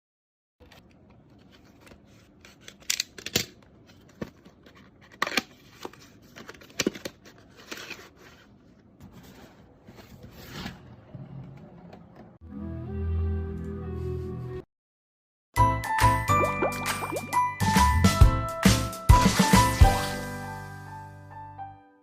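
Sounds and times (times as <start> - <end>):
packaging scraping and rustling: 0.6 - 10.8.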